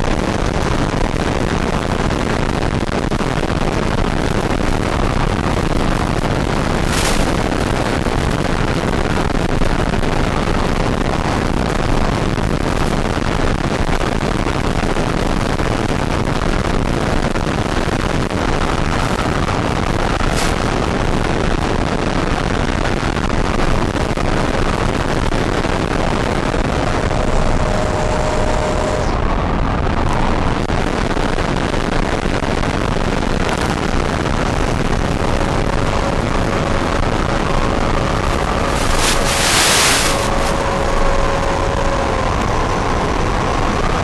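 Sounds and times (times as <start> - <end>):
faint pitch-shifting whine: 0.0 - 44.0
wind rush: 0.0 - 44.0
model jet motor noise: 26.0 - 29.2, 34.6 - 44.0.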